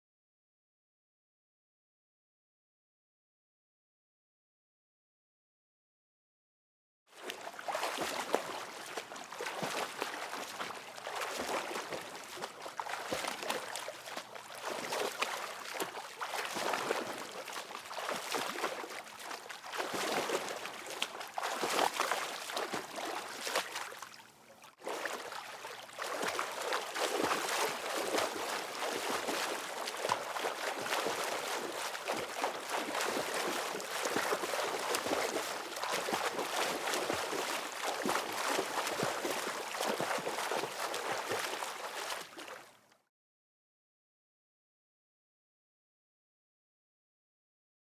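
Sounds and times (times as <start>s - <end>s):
water splashing: 7.2s - 42.7s.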